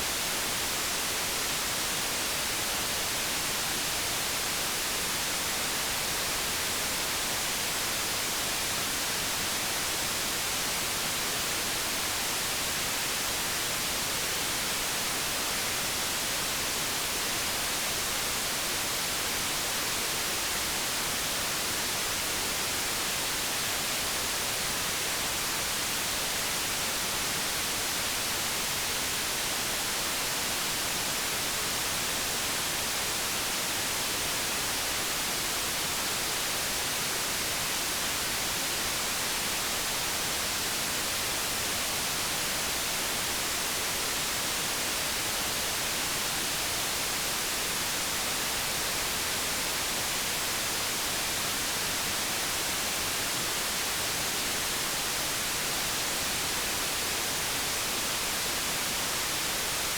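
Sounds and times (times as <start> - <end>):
steady white noise: 0.0 - 59.9.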